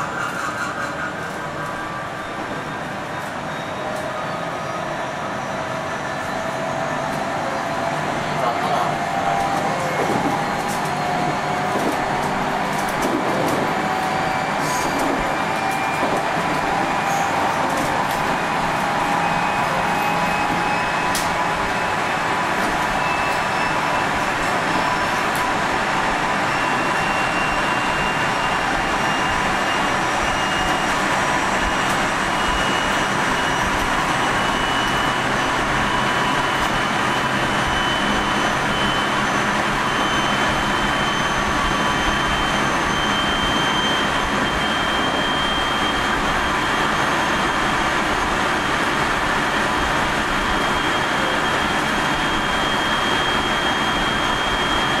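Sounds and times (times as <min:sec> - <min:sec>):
train wheels rumbling on rail: 0:00.0 - 0:55.0
high whining motor tones: 0:22.8 - 0:55.0.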